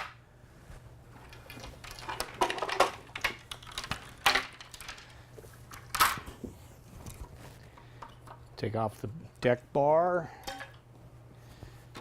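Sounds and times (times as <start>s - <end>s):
frame parts clicking and clinking: 1.1s - 6.4s.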